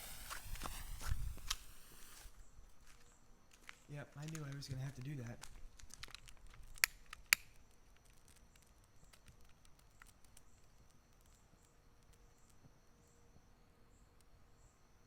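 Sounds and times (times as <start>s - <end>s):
sharp clicks: 0.0s - 2.3s
night insects trilling: 0.0s - 6.5s
faint crackles: 0.0s - 14.6s.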